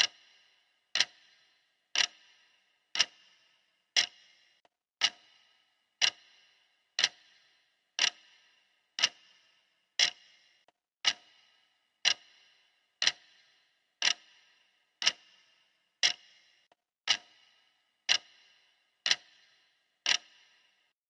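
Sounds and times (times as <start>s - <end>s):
clock ticking: 0.0s - 20.9s.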